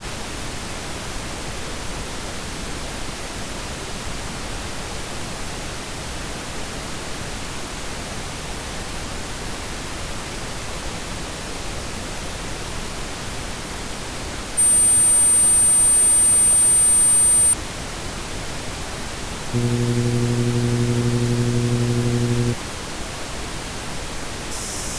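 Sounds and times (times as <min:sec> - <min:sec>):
high-pitched pure tone: 0:14.6 - 0:17.6, 0:19.6 - 0:22.6
pink-noise hiss: 0:14.6 - 0:17.6, 0:19.6 - 0:22.6.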